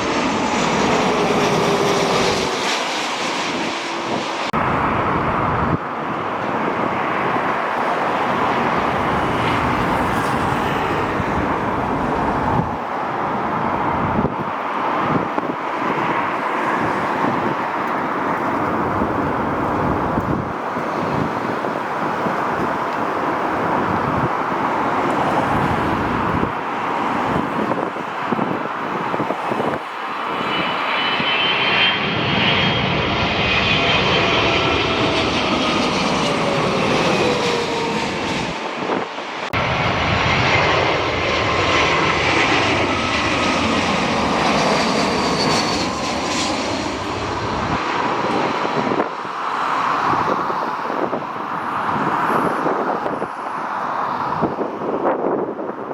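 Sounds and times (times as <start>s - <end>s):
descending engine whine: 0.0s - 13.1s, 30.6s - 48.6s
jet engines rushing past: 0.0s - 55.9s.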